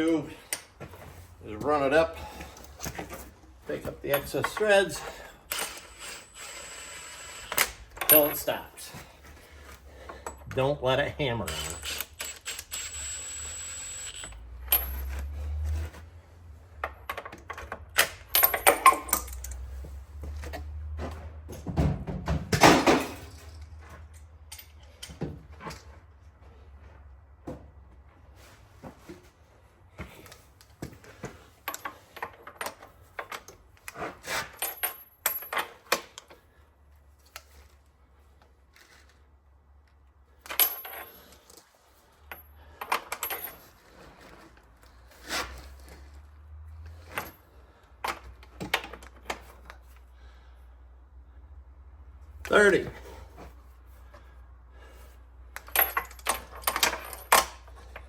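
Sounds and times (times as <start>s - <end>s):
metal tools clinking: 1.6s - 6.5s, 7.5s - 9.0s, 11.4s - 13.2s, 13.8s - 15.9s, 16.9s - 19.9s, 22.6s - 25.2s, 40.4s - 44.4s, 55.5s - 58.0s.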